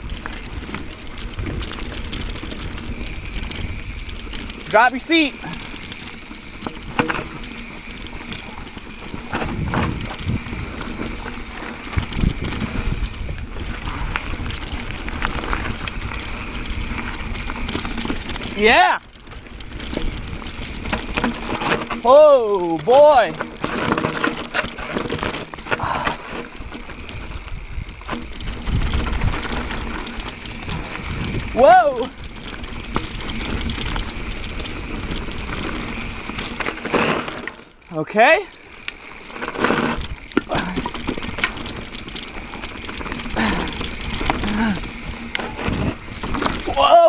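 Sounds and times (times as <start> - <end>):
wind noise: 0.0 - 37.2, 39.6 - 47.0
bike rattling: 0.0 - 47.0
bike tyres running over rock: 0.0 - 47.0
rider vocal sounds: 4.6 - 5.8, 18.5 - 19.0, 22.0 - 23.4, 31.4 - 32.2.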